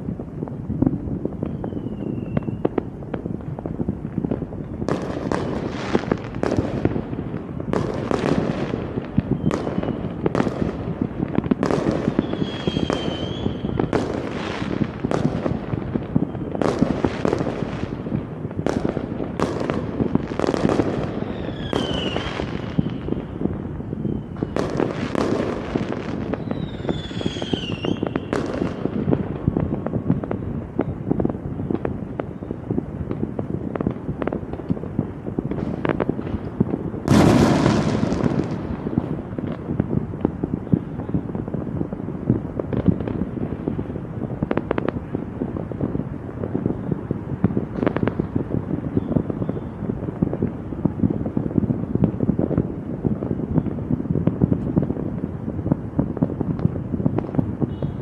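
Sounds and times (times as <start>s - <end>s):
fireworks bangs and crackling: 0.0s - 58.0s
firework whistles falling in pitch: 1.4s - 2.9s, 9.2s - 10.1s, 12.0s - 14.7s, 20.4s - 28.8s.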